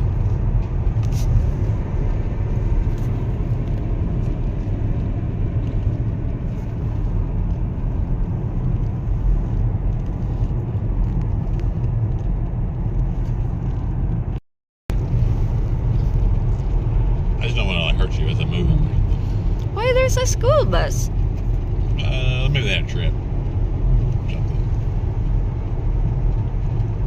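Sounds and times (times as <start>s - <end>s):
car road and engine rumble: 0.0s - 27.0s.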